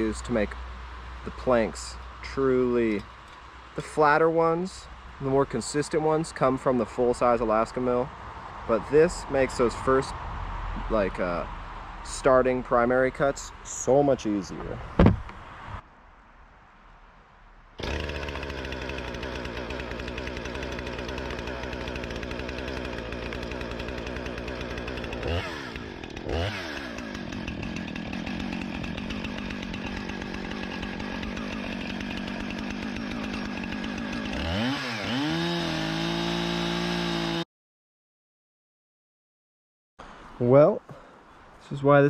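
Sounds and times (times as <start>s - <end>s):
chainsaw cutting log: 17.8s - 37.4s.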